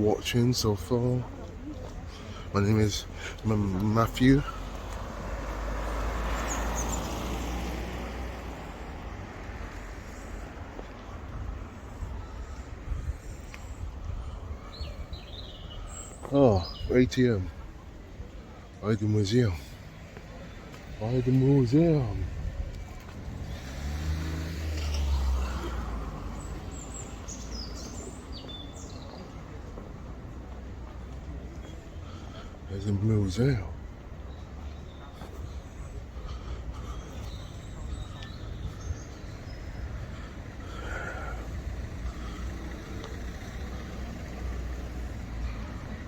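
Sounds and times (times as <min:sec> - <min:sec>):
low traffic rumble: 0:00.0 - 0:46.0
songbird chirping: 0:00.0 - 0:46.0
street background noise: 0:00.0 - 0:46.0
vehicle passing by: 0:04.4 - 0:13.4, 0:19.8 - 0:28.3, 0:29.7 - 0:46.0
vehicle engine passing: 0:04.5 - 0:11.4, 0:23.0 - 0:27.4.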